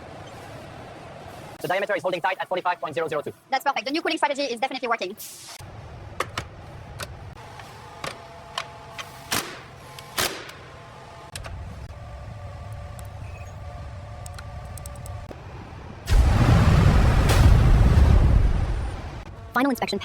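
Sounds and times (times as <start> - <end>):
workshop machinery humming: 0.0 - 3.5, 5.2 - 16.1.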